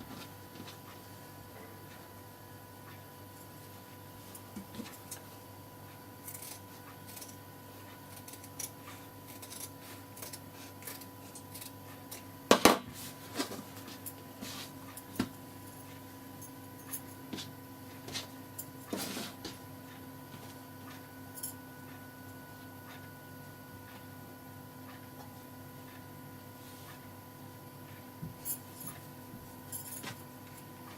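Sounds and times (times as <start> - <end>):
steady low hum: 0.0 - 30.9
scissors snipping fabric: 6.2 - 11.8.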